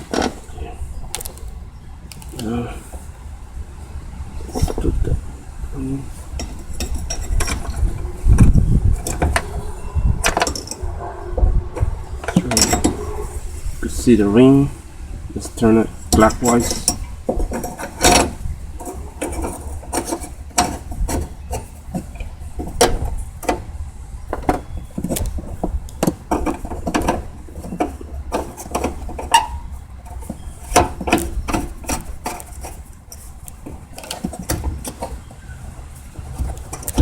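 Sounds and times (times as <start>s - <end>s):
low rumble: 0.0s - 16.1s.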